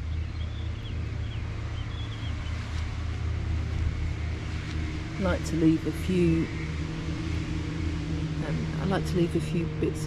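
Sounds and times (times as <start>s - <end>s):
bird chirps: 0.0s - 2.8s
steady low rumble: 0.0s - 10.0s.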